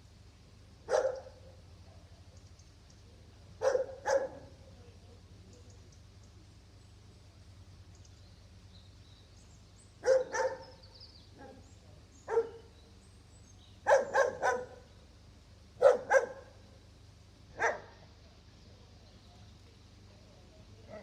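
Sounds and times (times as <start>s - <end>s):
faint low hum: 0.0s - 21.0s
dog barking: 0.9s - 1.6s, 3.6s - 4.6s, 10.0s - 10.8s, 12.3s - 12.7s, 13.9s - 14.8s, 15.8s - 16.6s, 17.6s - 18.0s.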